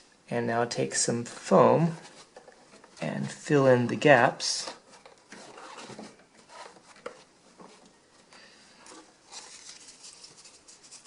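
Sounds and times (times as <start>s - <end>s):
foam rustling and scraping: 4.7s - 8.0s.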